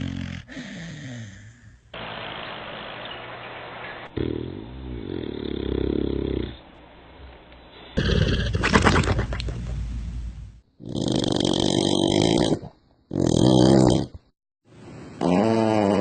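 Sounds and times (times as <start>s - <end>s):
person snoring: 0.0s - 2.0s, 4.1s - 6.6s, 8.0s - 8.6s, 10.8s - 14.2s, 15.2s - 16.0s.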